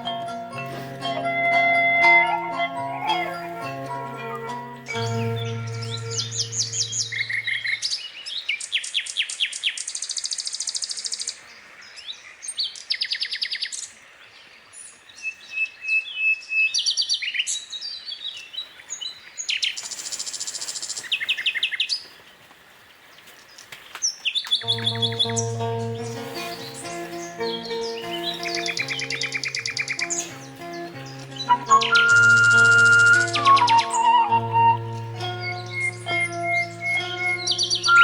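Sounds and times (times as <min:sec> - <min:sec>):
birds chirping and trilling: 0:00.0 - 0:09.7, 0:24.5 - 0:38.0.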